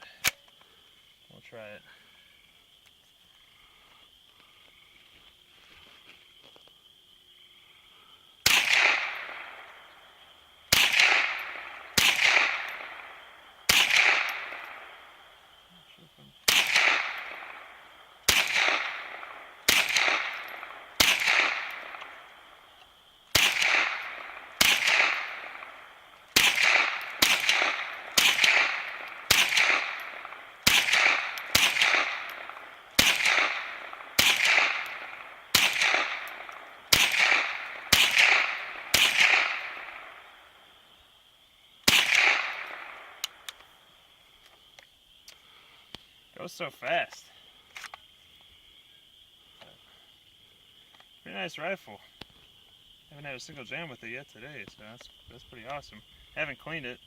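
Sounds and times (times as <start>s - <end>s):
rifle shots with echo: 8.4s - 15.4s, 16.4s - 22.7s, 23.3s - 40.6s, 41.8s - 43.5s.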